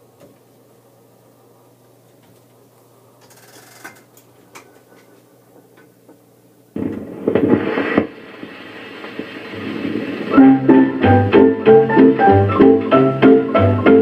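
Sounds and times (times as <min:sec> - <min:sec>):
steady low hum: 0:00.0 - 0:11.7
jukebox playback: 0:09.4 - 0:14.0.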